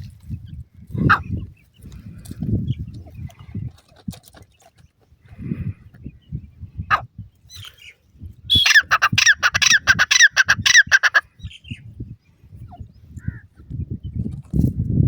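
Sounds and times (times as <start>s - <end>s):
francolin calling: 7.5s - 11.8s.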